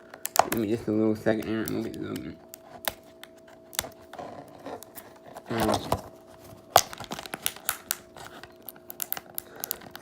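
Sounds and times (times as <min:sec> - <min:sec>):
plastic wrapping tearing and crinkling: 0:02.8 - 0:10.0.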